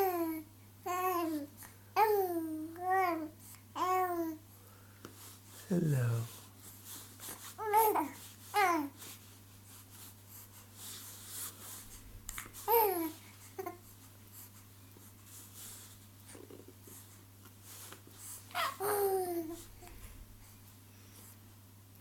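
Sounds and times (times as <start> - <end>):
infant cooing: 0.0 - 4.4, 7.6 - 8.9, 12.7 - 13.8, 18.5 - 19.9.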